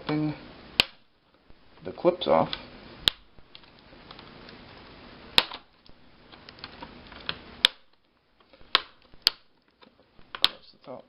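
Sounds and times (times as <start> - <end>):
plastic clips snapping: 3.0 - 4.2, 5.4 - 11.0.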